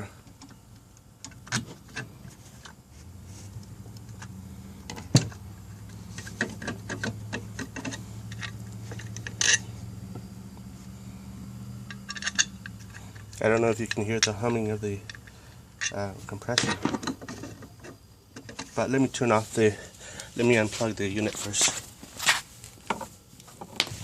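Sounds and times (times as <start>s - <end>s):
handling clicks and knocks: 0.2s - 2.8s, 3.9s - 10.3s, 11.8s - 18.8s.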